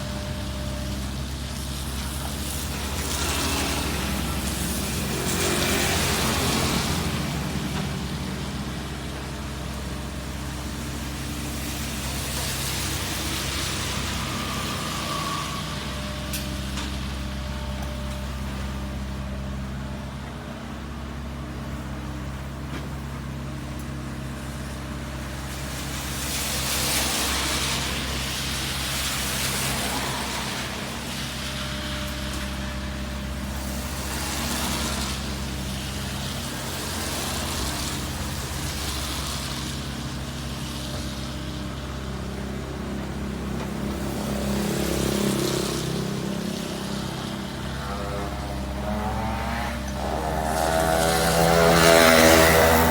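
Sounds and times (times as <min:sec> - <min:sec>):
diesel machinery engine: 0:00.0 - 0:52.9
rushing hiss: 0:25.3 - 0:52.9.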